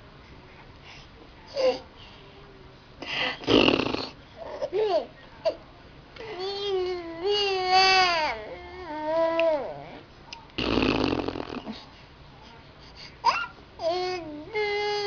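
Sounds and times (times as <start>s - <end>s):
blown raspberry noise: 3.4s - 4.2s, 10.6s - 11.8s.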